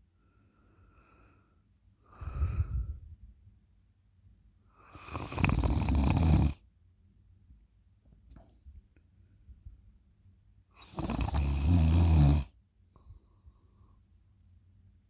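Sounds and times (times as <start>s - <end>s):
person snoring: 4.9s - 6.6s, 10.8s - 12.5s.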